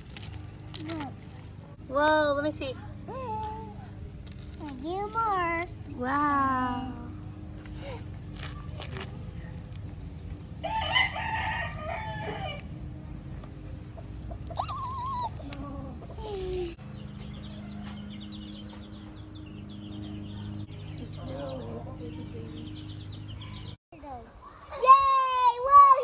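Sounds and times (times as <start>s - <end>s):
rooster crowing: 10.6s - 12.7s
chicken call: 14.5s - 15.5s.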